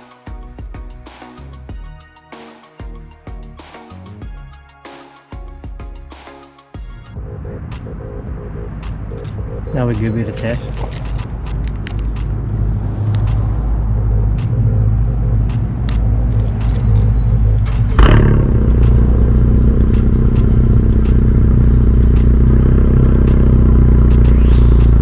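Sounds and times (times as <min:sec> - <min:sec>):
car engine rumbling: 0:07.2 - 0:25.0
engine revving burst: 0:12.2 - 0:25.0.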